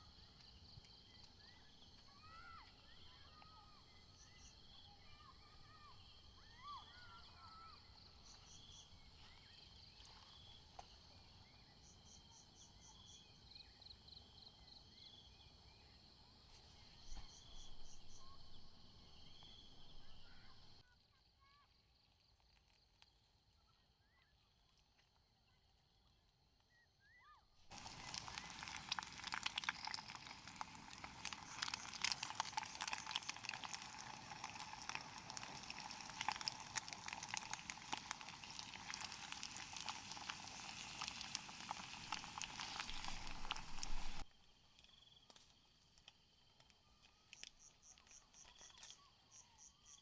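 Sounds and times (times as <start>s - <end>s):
insects chirping: 16.7s - 20.8s, 27.7s - 46.7s, 47.3s - 50.0s.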